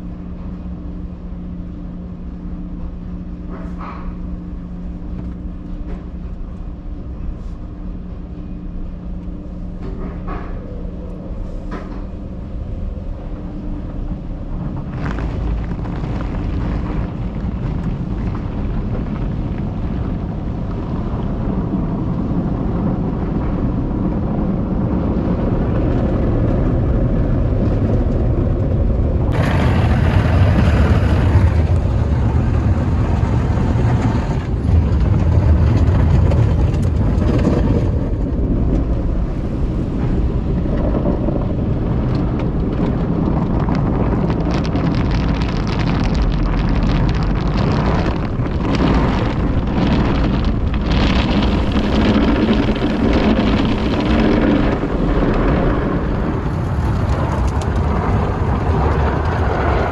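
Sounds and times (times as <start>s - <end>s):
car wash water spray and machinery: 0.0s - 59.9s
rapid patter against car: 40.4s - 59.9s.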